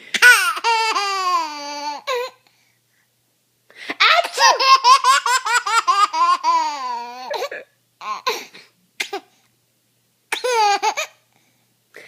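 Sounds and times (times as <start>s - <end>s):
baby laughing: 0.1s - 2.4s, 4.0s - 8.4s, 10.4s - 11.2s.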